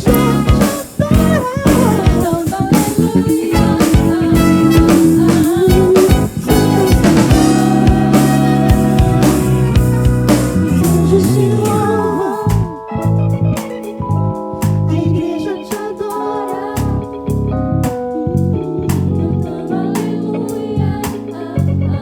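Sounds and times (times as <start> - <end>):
gospel band playing: 0.0 - 22.0
sustained keyboard chords: 0.0 - 22.0.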